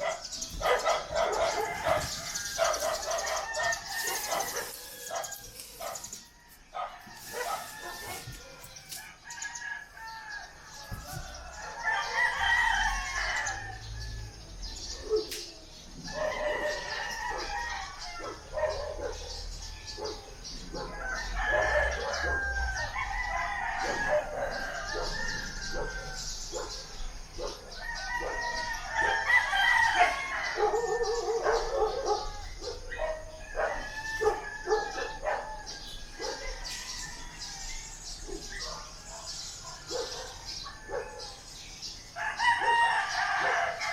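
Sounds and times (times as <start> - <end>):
roosters crowing: 0.0 - 43.9.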